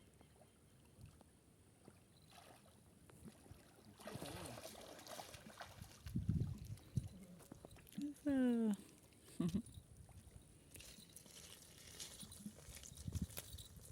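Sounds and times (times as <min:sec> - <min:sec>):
faint water sounds: 0:00.0 - 0:13.9
water splashing: 0:02.3 - 0:06.8.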